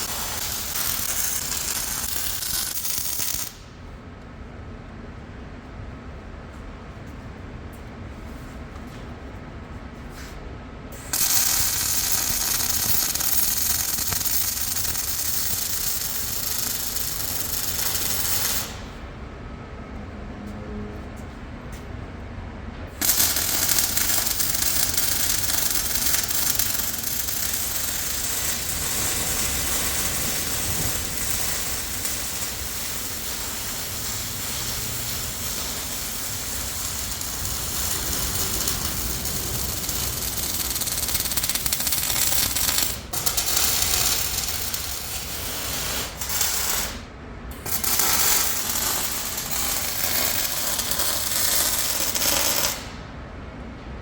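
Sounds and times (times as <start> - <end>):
welding arc crackling: 0.0 - 3.7, 11.0 - 18.9, 23.0 - 53.0.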